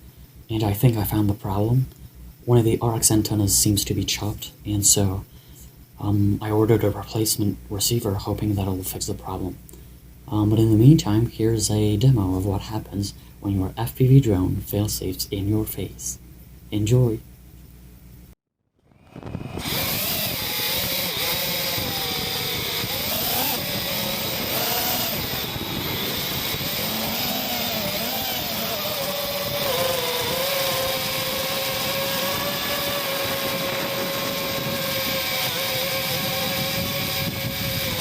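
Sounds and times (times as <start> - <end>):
quadcopter propellers buzzing: 18.9 - 38.0.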